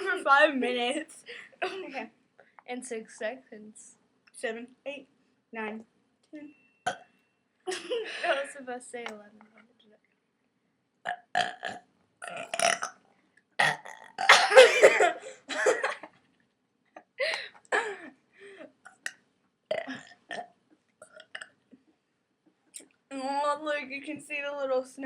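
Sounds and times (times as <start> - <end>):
girls burping: 11.1 - 12.9, 13.6 - 16.1, 17.0 - 19.0, 19.7 - 20.4.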